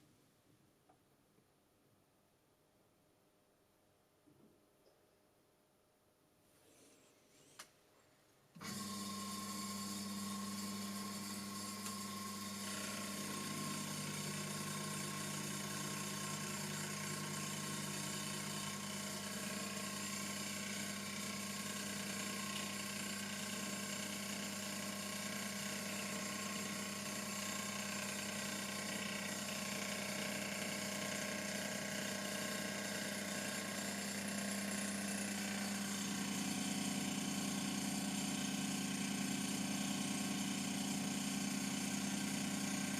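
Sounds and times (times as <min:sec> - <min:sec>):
milling machine humming and whining: 0:08.6 - 0:42.9.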